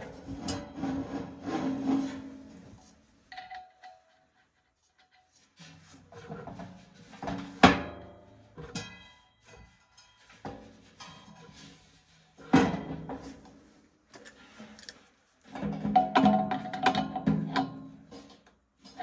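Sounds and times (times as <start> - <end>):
tools scraping and clattering: 0.0 - 3.6.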